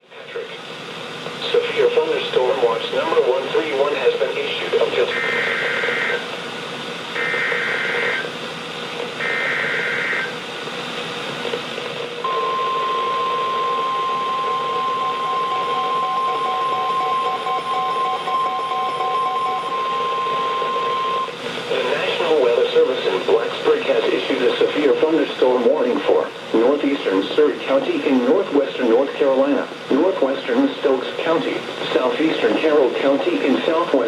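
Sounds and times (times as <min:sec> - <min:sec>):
speaker hiss: 0:00.0 - 0:34.0
steady warning alert tone: 0:05.1 - 0:06.2, 0:12.2 - 0:21.4
faint pulsing beep: 0:12.2 - 0:21.3.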